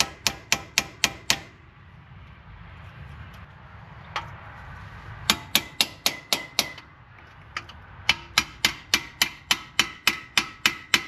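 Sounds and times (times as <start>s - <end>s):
hammer striking metal chisel: 0.0s - 1.5s, 5.3s - 6.9s, 7.6s - 11.0s.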